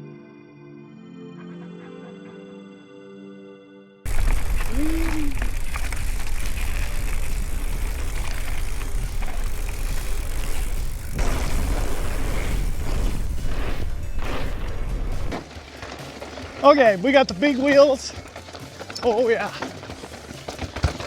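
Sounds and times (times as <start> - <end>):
bike tyre and trail noise: 4.0 - 21.0
rattles and knocks: 15.4 - 21.0.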